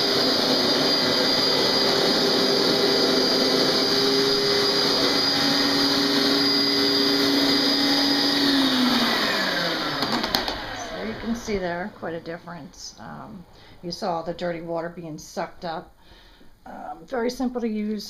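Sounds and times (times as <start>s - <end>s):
carpet cleaner motor whining: 0.0s - 12.4s.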